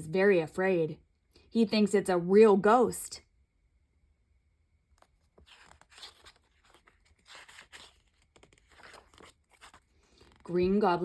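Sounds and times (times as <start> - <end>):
book pages rustling and turning: 4.9 - 11.0.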